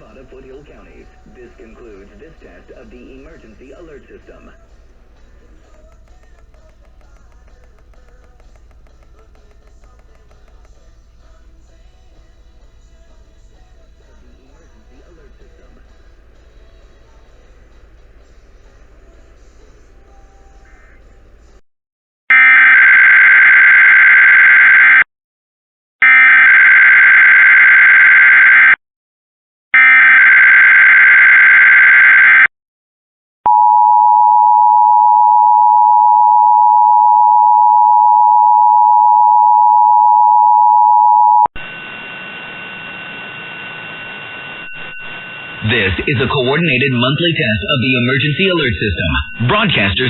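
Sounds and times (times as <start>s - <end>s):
background hiss: 0.0s - 21.6s
steady two-tone attention signal: 33.5s - 50.0s.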